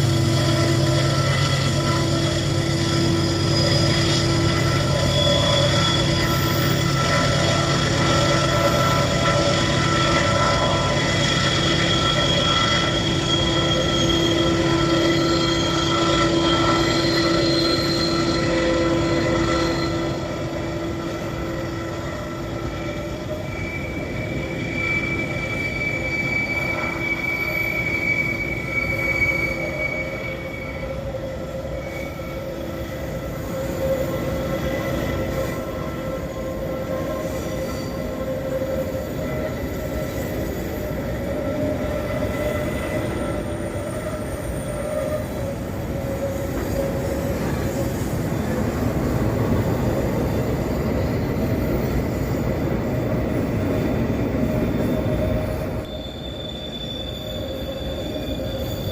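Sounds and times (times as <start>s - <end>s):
diesel locomotives under full throttle: 0.0s - 22.7s
train wheels squealing: 0.0s - 58.9s.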